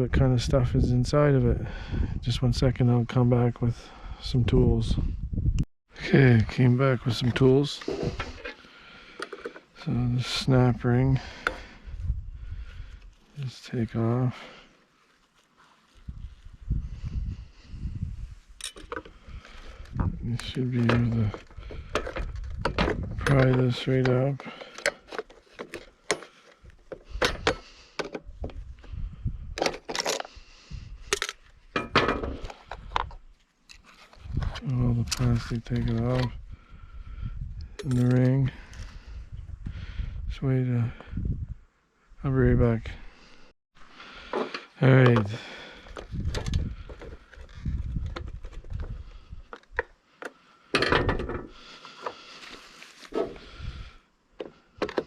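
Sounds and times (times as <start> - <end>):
metal tools clicking and clinking: 18.6 - 19.1.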